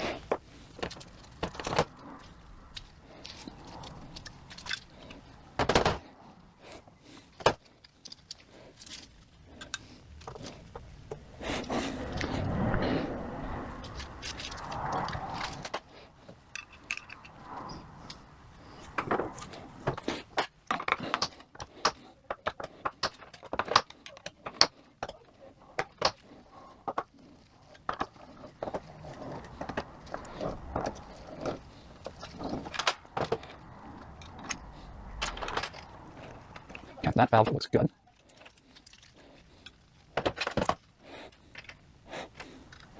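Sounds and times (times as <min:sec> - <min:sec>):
small steel parts clinking: 0:00.2 - 0:06.0, 0:13.8 - 0:26.2.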